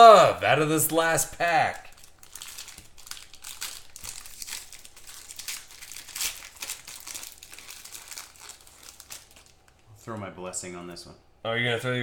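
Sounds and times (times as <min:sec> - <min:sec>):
card pack wrapper tearing and crinkling: 0:01.7 - 0:09.8.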